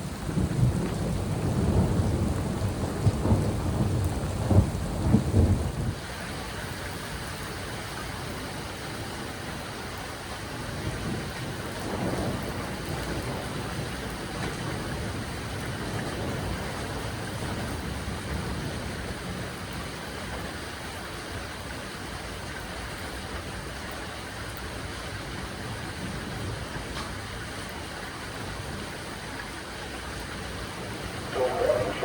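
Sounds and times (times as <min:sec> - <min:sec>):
storm wind and rain: 0:00.0 - 0:32.0
wind rumbling on microphone: 0:00.1 - 0:06.0.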